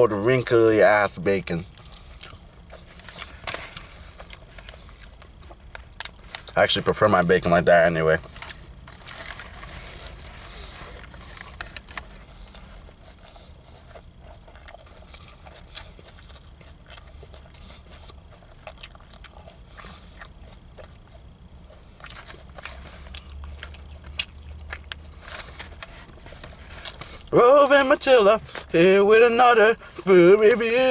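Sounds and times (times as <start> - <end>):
person chewing sandwich: 1.2 - 30.9
small crunches and clicks: 1.3 - 6.6, 7.4 - 12.9, 18.4 - 27.4.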